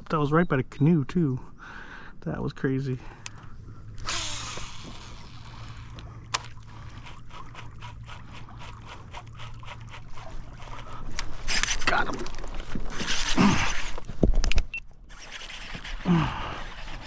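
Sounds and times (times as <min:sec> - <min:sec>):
fishing reel ticking: 0:04.0 - 0:11.8
water splashing: 0:04.2 - 0:13.5.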